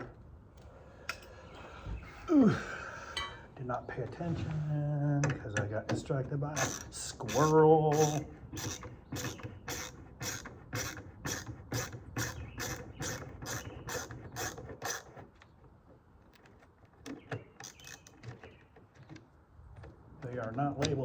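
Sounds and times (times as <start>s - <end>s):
ratcheting hand tool clicking: 6.6s - 15.1s.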